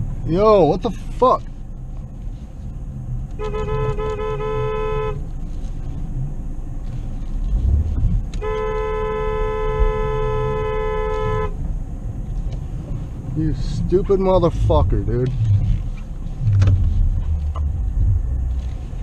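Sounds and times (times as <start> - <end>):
low vehicle rumble: 0.0 - 19.0
car horn honking: 3.4 - 5.2, 8.4 - 11.6.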